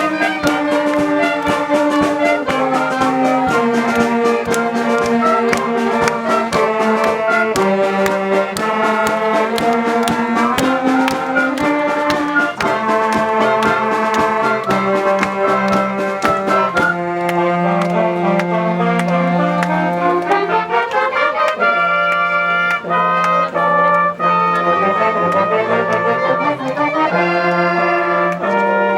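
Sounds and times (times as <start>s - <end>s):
percussion beat: 0.0s - 21.0s
brass chords: 0.0s - 28.9s.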